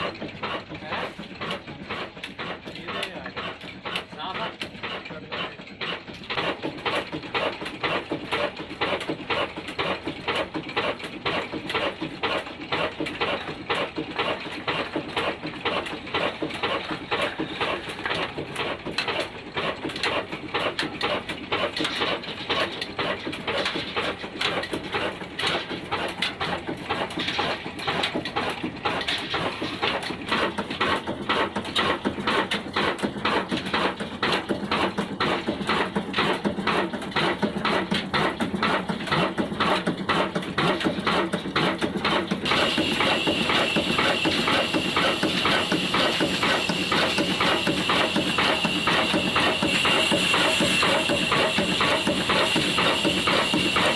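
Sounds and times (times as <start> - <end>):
diesel engine running: 0.0 - 53.9.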